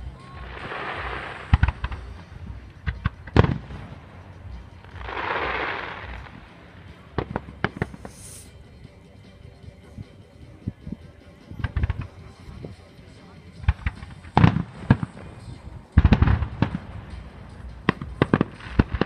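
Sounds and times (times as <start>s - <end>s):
fireworks bangs: 0.3s - 8.4s, 13.6s - 19.0s
fireworks hissing rush: 0.4s - 4.0s, 4.8s - 8.6s
fireworks pops: 0.6s - 2.2s.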